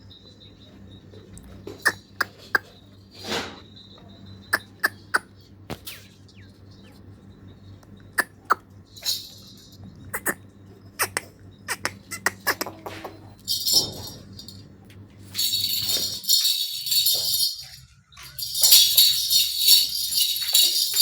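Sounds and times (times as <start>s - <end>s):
steady low hum: 0.0s - 21.0s
goats clicking and knocking: 0.8s - 3.2s, 4.4s - 6.0s, 7.8s - 10.4s, 11.0s - 21.0s
goat snorting: 10.1s - 10.4s.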